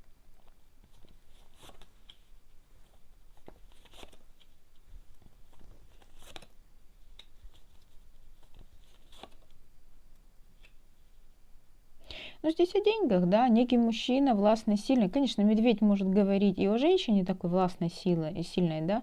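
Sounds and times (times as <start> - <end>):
cards snapping and rustling: 3.3 - 6.5, 7.1 - 9.6.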